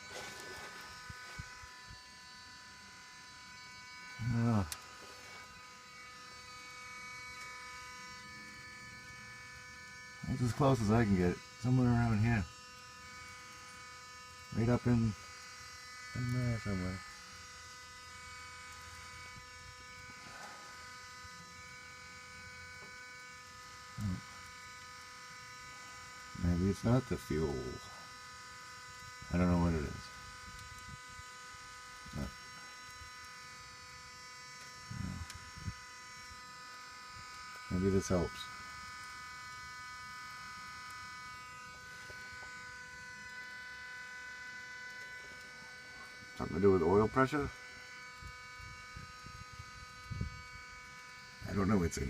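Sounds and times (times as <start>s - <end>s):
electric hum with high whine: 0.0s - 52.0s.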